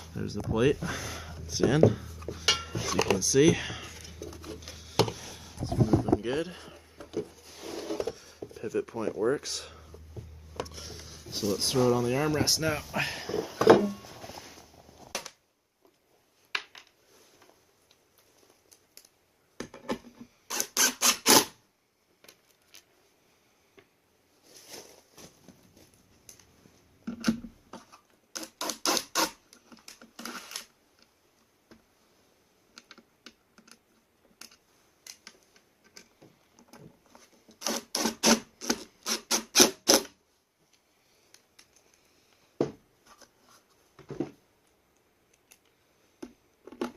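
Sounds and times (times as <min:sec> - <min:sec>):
scraping and handling noise: 0:00.0 - 0:16.0, 0:24.3 - 0:28.5, 0:40.6 - 0:46.9.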